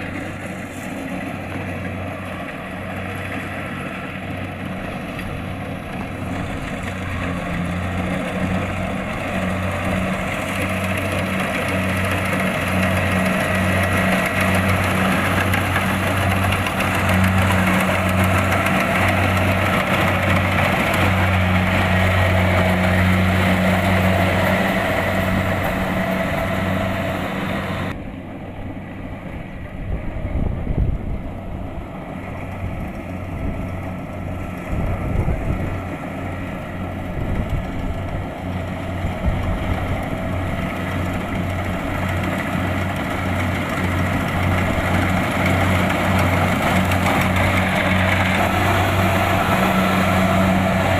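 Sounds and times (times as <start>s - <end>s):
diesel engine running: 0.0s - 50.9s
machinery whirring and rattling: 0.0s - 50.9s
gusty low rumble: 24.0s - 35.9s, 36.9s - 40.7s.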